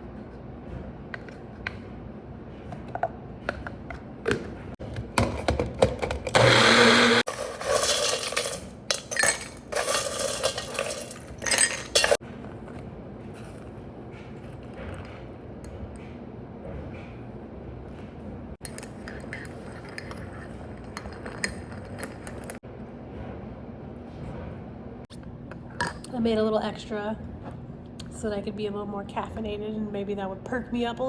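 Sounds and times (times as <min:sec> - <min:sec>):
blender rattling and whirring: 0:05.8 - 0:08.6
motor hum: 0:06.0 - 0:07.6
glassware and utensils clinking: 0:07.3 - 0:12.2.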